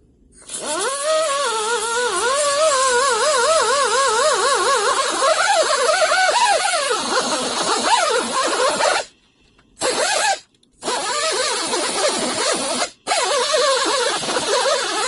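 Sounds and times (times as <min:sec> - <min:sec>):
angle grinder on metal: 0:00.5 - 0:09.1.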